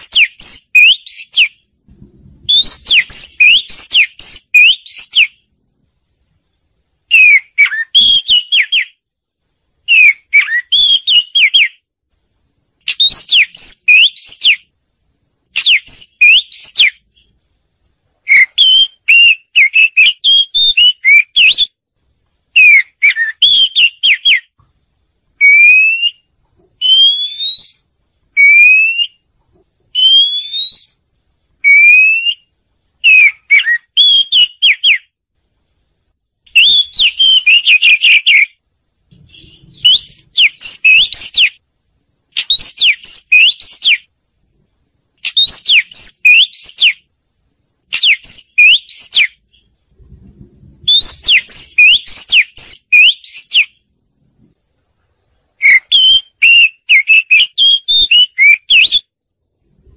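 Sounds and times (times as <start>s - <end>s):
bird singing whistled notes: 0.0s - 5.5s, 7.1s - 9.0s, 9.8s - 11.8s, 12.8s - 14.7s, 15.5s - 17.4s, 18.2s - 21.8s, 22.5s - 24.6s, 25.4s - 29.3s, 29.9s - 31.0s, 31.6s - 35.1s, 36.5s - 38.6s, 39.2s - 41.6s, 42.4s - 44.1s, 45.2s - 47.1s, 47.9s - 49.8s, 50.8s - 53.9s, 55.6s - 59.1s.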